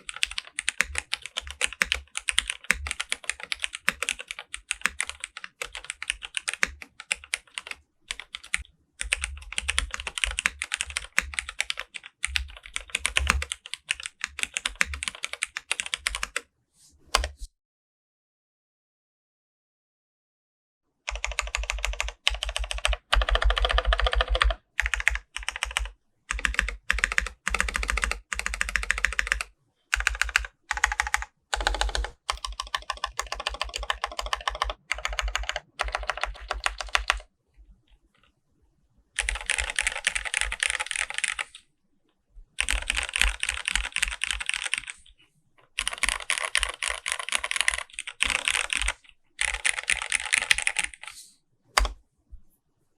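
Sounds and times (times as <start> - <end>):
typing on mechanical keyboard: 0.0 - 16.4, 21.1 - 37.3, 39.2 - 41.6, 42.6 - 45.2, 45.8 - 51.2, 51.8 - 52.0.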